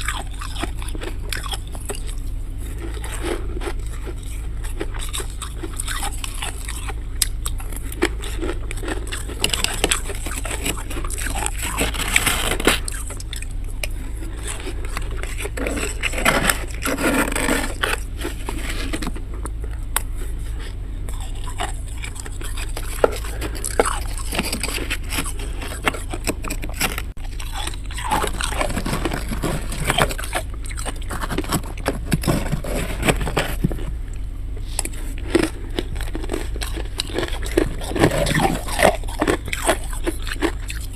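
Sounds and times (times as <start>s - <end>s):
frost being scraped and crunched: 0.0s - 34.0s, 34.6s - 40.9s
steady low hum: 0.0s - 40.9s.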